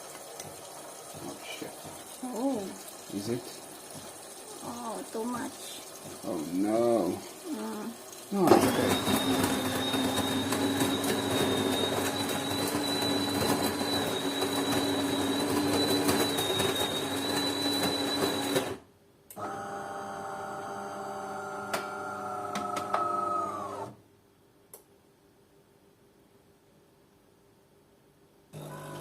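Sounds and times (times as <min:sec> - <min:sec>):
coffee machine humming: 0:00.0 - 0:18.8, 0:19.4 - 0:24.0, 0:28.6 - 0:29.0
coffee machine whirring: 0:08.4 - 0:18.8, 0:19.4 - 0:24.0, 0:28.6 - 0:29.0.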